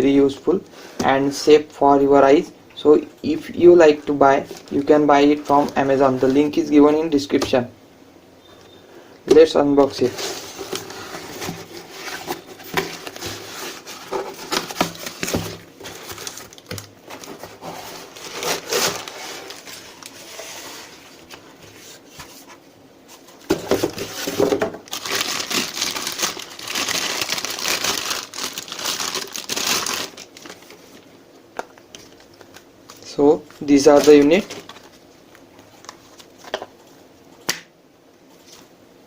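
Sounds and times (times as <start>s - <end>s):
packaging crinkling and rustling: 4.4s - 6.7s, 10.0s - 22.0s, 23.5s - 37.0s.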